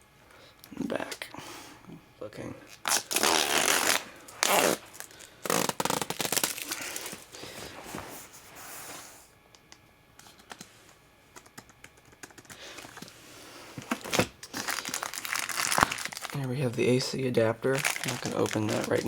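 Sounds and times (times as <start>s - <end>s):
packaging rustling and crinkling: 2.8s - 8.3s, 12.7s - 19.0s.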